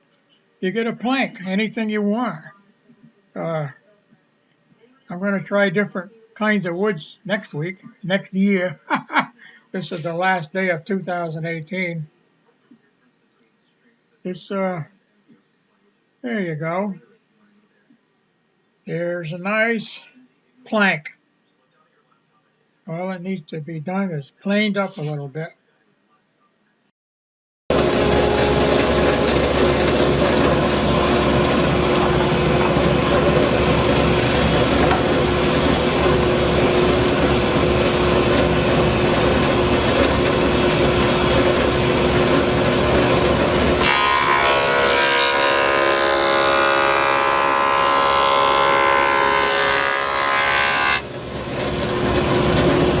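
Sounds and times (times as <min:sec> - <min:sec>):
woodworking power tool running: 0:27.7 - 0:53.0.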